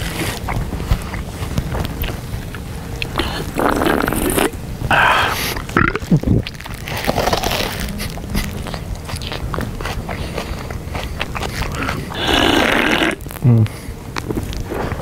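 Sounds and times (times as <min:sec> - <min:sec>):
person crunching and chewing: 0:00.0 - 0:15.0
short low vocal sound: 0:07.1 - 0:09.0.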